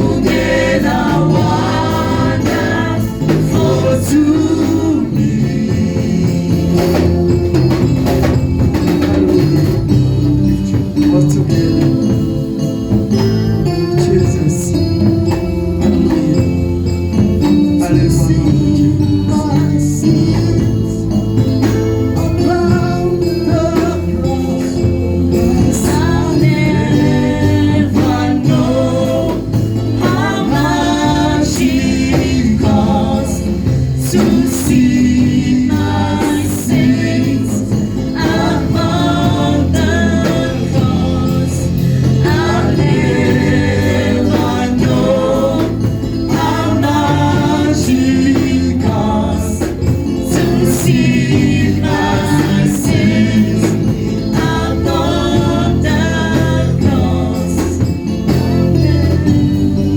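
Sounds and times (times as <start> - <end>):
group singing worship song: 0.0 - 59.9
instrumental backing with bass: 0.0 - 59.9.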